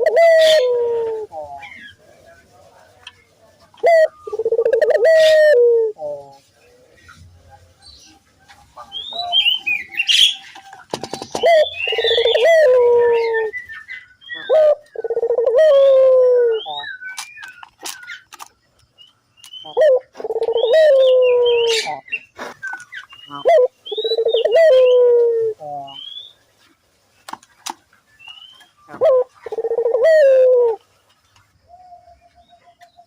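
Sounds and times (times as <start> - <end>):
dove cooing: 0.0 - 1.8, 3.8 - 6.4, 8.8 - 13.6, 14.3 - 16.9, 19.6 - 22.0, 23.3 - 26.0, 28.9 - 30.8
small birds chirping: 0.0 - 33.0.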